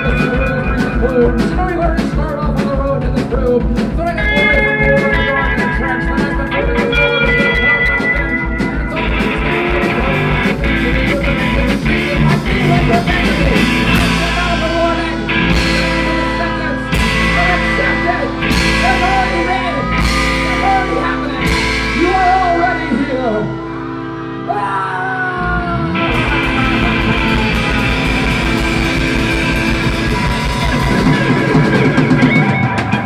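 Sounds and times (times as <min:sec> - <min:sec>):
live rock band playing: 0:00.0 - 0:33.0
fast drum hits: 0:26.1 - 0:33.0.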